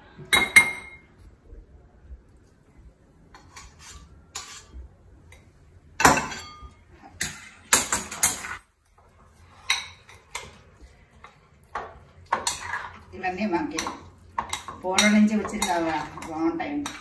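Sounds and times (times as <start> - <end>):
metal spoon scraping metal pot: 3.4 - 4.8, 12.3 - 13.0.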